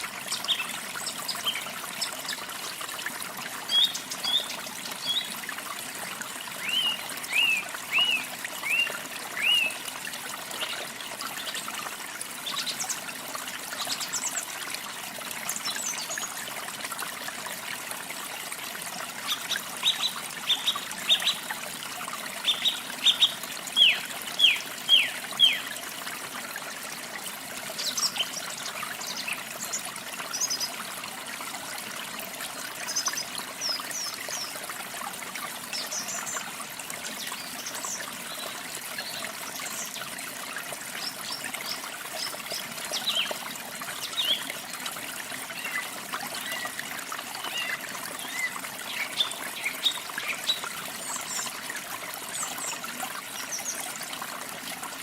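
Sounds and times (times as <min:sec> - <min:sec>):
trickle of running water: 0:00.0 - 0:55.0.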